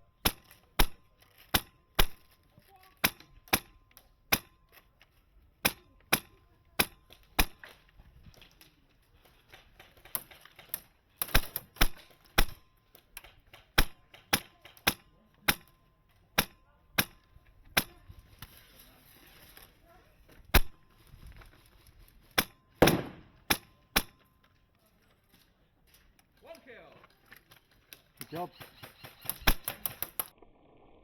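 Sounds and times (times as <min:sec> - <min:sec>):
airsoft gun firing shots: 0:00.2 - 0:02.3, 0:05.6 - 0:07.7, 0:11.2 - 0:12.7, 0:13.5 - 0:15.8, 0:16.4 - 0:18.0, 0:20.5 - 0:20.8, 0:22.4 - 0:24.2, 0:28.6 - 0:30.3.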